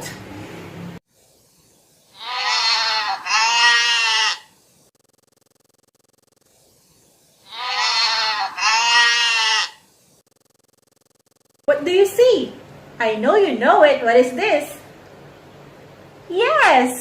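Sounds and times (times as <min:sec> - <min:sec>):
goat bleating: 0:02.2 - 0:04.5, 0:07.4 - 0:09.8.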